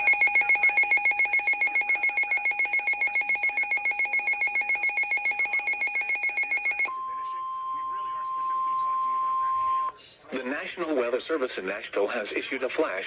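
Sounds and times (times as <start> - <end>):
electronic alert trill: 0.0 - 6.9.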